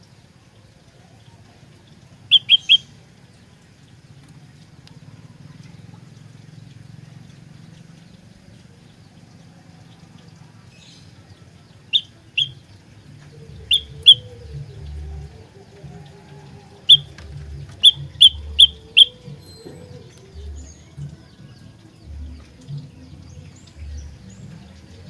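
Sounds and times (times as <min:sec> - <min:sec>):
bird sharp chip calls: 0:02.3 - 0:03.0, 0:11.8 - 0:20.8.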